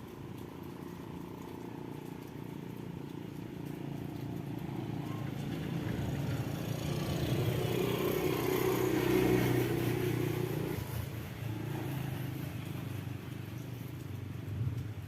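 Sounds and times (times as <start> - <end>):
vehicle engine passing: 0.2 - 14.4.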